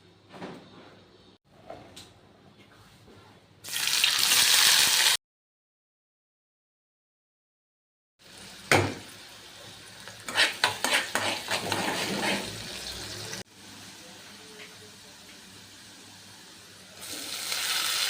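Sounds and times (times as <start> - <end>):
frying sizzle: 3.7 - 5.2, 8.2 - 18.0
spoon clinking and scraping: 10.2 - 12.6.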